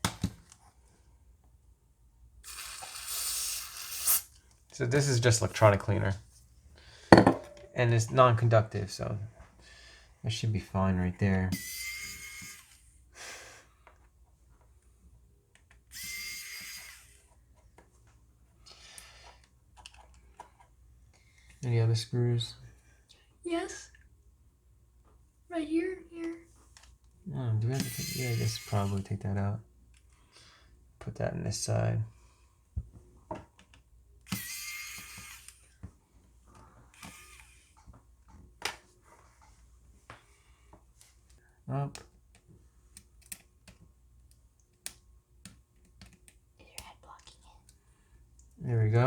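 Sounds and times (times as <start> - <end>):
aerosol spray hissing: 2.5 - 4.3
electric screwdriver whirring: 11.6 - 12.9, 15.9 - 17.3, 27.8 - 29.1, 34.3 - 35.8, 36.9 - 37.8.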